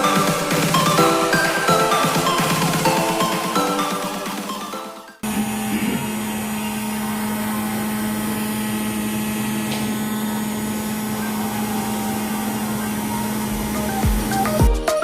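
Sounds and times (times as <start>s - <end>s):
laptop droning hum with hiss: 5.3s - 14.7s.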